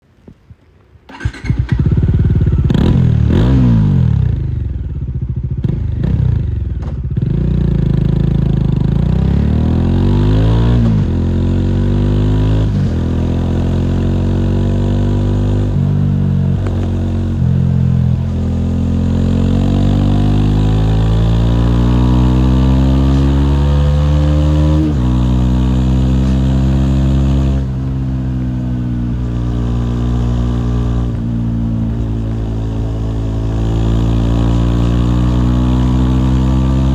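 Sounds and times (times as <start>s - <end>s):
motorcycle engine revving: 1.1s - 36.9s.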